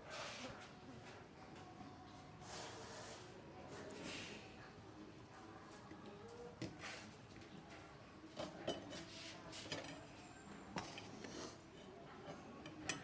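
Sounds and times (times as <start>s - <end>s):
utensils and dishes clinking: 8.3s - 13.0s.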